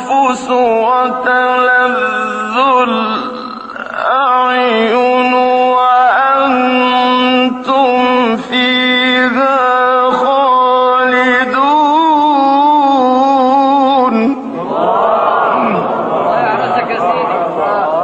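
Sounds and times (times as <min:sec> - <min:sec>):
man chanting melodically: 0:00.0 - 0:14.8.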